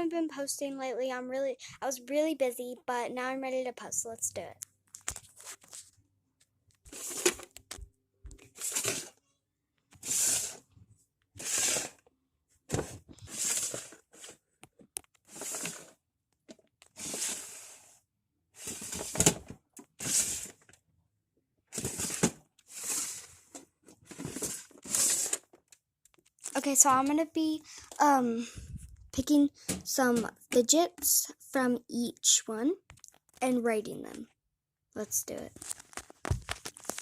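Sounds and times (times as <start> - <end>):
rustling handling noise: 4.9 - 9.2, 21.7 - 28.0, 35.4 - 37.0.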